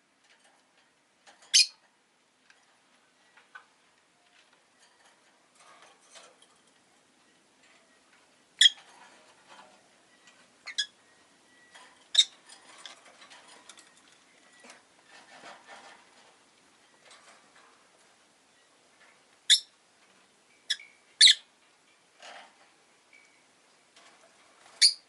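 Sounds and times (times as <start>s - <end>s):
lovebird high chirps: 1.5s - 1.8s, 10.1s - 12.4s, 19.5s - 19.7s, 20.6s - 21.5s, 24.8s - 25.0s
soft clicking and scratching: 2.4s - 7.0s, 7.6s - 10.8s, 11.6s - 18.3s, 21.6s - 24.8s.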